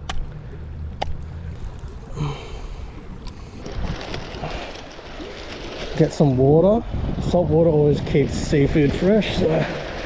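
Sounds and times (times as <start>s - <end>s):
wind: 0.0s - 10.0s
water noise: 0.4s - 10.0s.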